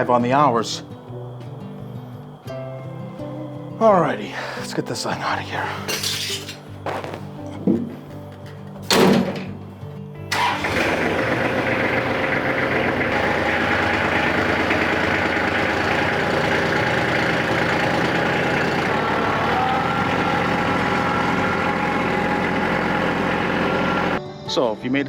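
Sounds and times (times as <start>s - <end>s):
tractor engine idling: 3.1s - 24.2s.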